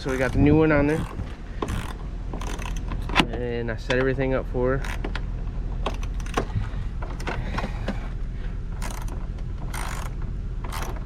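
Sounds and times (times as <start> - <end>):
ratchet wrench clicking: 0.0 - 3.0, 8.8 - 11.0.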